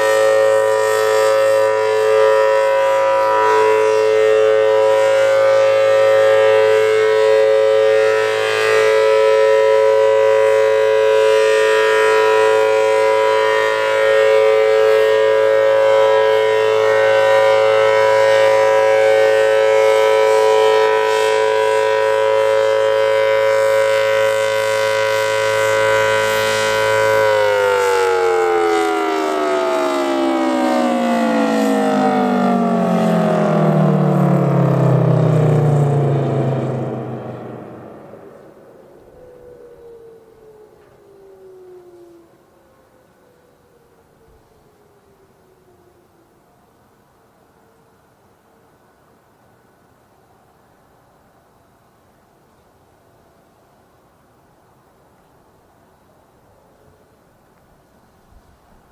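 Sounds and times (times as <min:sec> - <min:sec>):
two-tone siren: 0:00.0 - 0:46.6.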